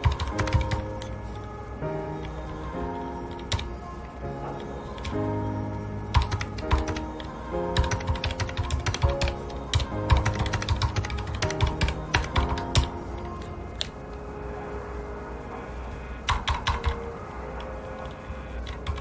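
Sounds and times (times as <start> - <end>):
mechanical keyboard typing: 0.0 - 0.9, 6.1 - 7.0, 7.8 - 12.9, 16.3 - 17.0, 18.6 - 19.0
background music sustained notes: 0.0 - 19.0.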